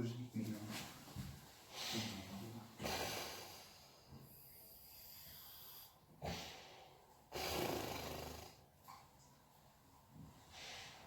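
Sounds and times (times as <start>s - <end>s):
hissing breath: 2.8s - 8.6s
man snoring: 7.4s - 8.6s.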